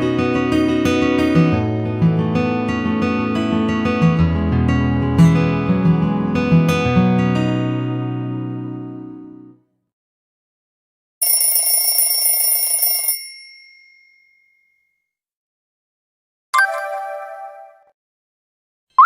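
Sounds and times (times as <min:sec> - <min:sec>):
high phone alert tone: 0:11.2 - 0:13.3, 0:16.6 - 0:17.9.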